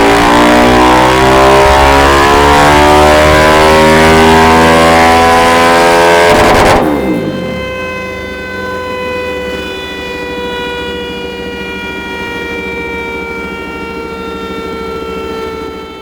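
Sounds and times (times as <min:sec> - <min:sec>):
drivetrain whine falling in pitch: 0:00.0 - 0:16.0
motorcycle engine idling: 0:07.0 - 0:16.0.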